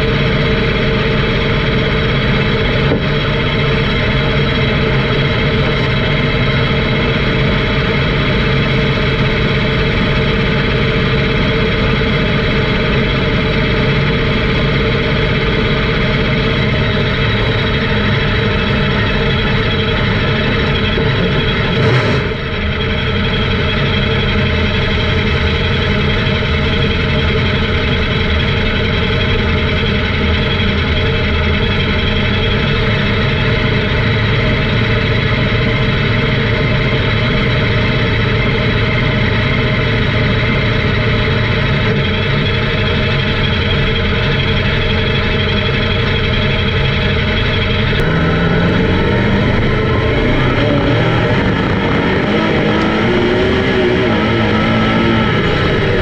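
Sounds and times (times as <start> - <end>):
engine revving and shifting: 0.0 - 30.2, 47.6 - 56.0
racing car engines droning: 0.0 - 56.0.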